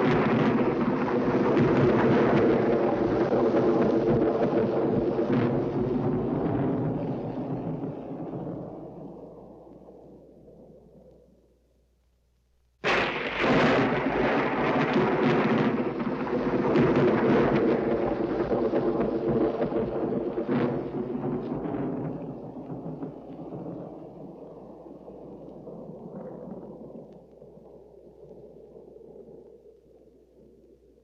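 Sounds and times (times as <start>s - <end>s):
sharp thunder crack: 0.0s - 9.6s, 12.8s - 24.8s
rolling thunder rumble: 0.0s - 11.5s, 12.8s - 31.0s.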